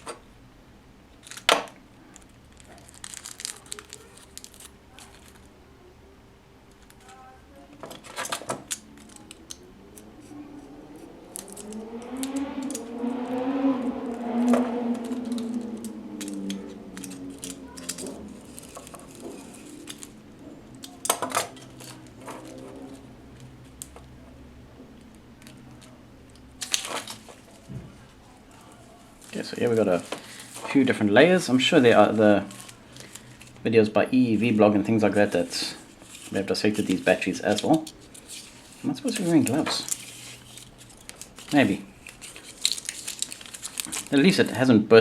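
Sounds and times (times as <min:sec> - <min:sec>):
pitched squeal: 0:08.9 - 0:23.4.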